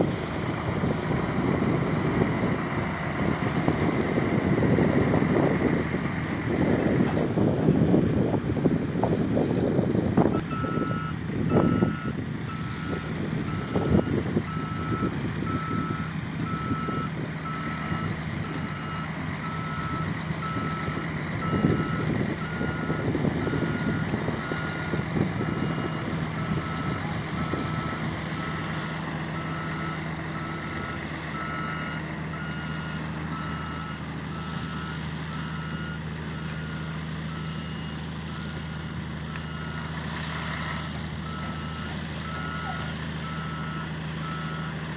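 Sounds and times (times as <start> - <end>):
diesel engine running: 0.0 - 44.9
reversing alarm beeping: 10.3 - 39.9, 41.2 - 44.8.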